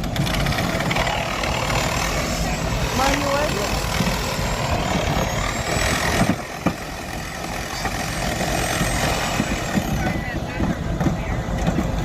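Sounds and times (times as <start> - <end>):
rumbling noise: 0.0 - 12.0
vehicle engine running: 0.0 - 12.0.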